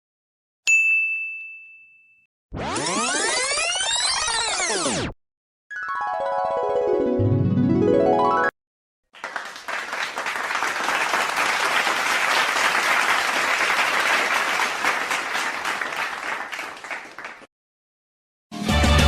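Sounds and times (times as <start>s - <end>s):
crowd applauding: 9.2s - 17.5s.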